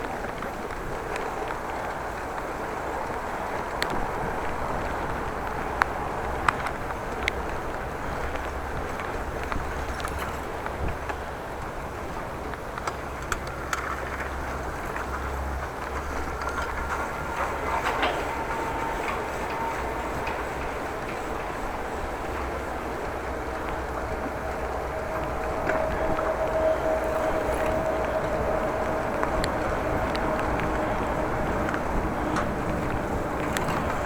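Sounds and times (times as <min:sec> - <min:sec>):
bicycle tyres on wet street: 0:00.0 - 0:34.0
light rain: 0:00.0 - 0:34.0
steady whine: 0:13.8 - 0:34.0.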